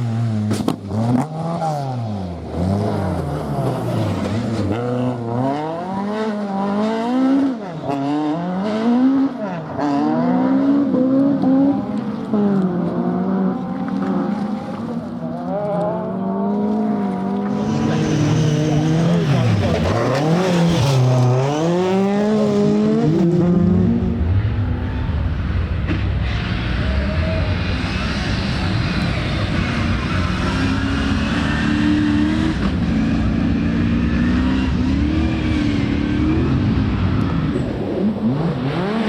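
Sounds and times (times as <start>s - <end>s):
rally car engine revving: 0.0s - 39.0s.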